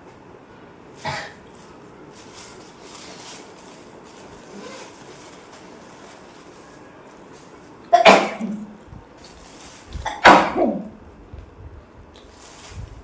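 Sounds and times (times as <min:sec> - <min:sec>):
woman sneezing: 0:01.0 - 0:01.4, 0:10.1 - 0:10.9.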